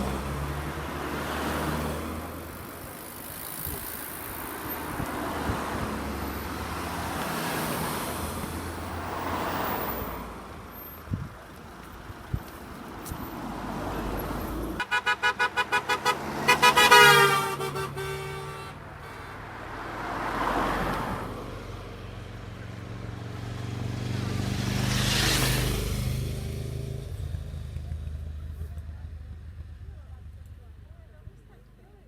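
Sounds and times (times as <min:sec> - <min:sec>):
vehicles passing: 0:00.0 - 0:32.0
vehicle horn tooting: 0:14.8 - 0:19.5.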